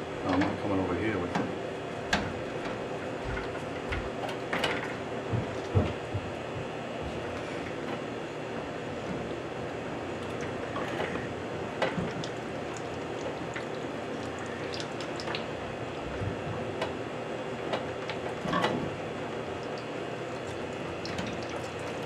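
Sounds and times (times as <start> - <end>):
water dribbling: 12.0 - 15.5, 19.5 - 22.0.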